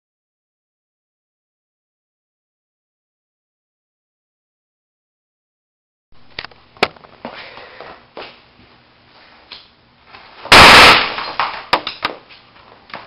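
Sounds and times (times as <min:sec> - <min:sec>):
grenade bang: 0:10.5 - 0:11.6.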